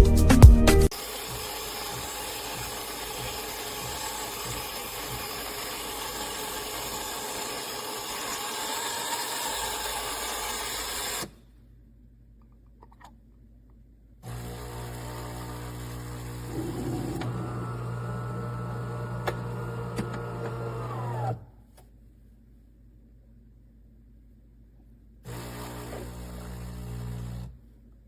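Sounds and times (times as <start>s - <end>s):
espresso machine hissing: 15.1s - 21.2s.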